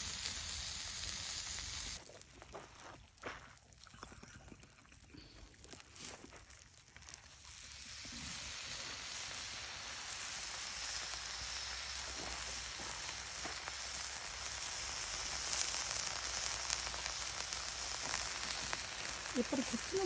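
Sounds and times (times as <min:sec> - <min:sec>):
food sizzling on a grill: 0:00.0 - 0:02.2, 0:05.8 - 0:20.0.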